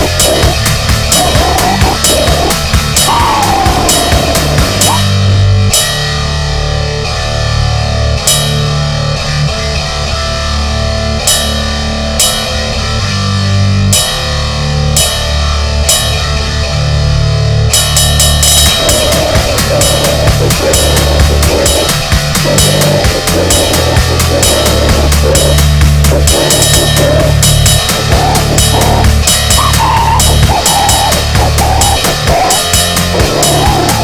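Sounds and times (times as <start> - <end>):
drum kit: 0.0 - 6.4, 14.0 - 16.6, 17.8 - 34.0
distorted guitar and bass riffing: 0.0 - 34.0.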